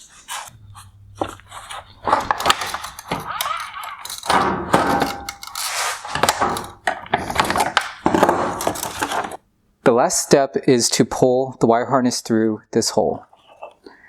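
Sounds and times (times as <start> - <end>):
sharp clicks and thunks: 0.4 - 9.4
plastic and metal parts clinking: 0.5 - 9.4.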